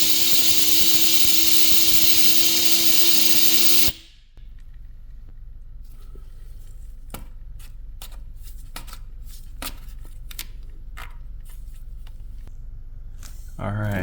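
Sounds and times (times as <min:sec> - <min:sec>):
steady low hum: 0:00.0 - 0:08.0.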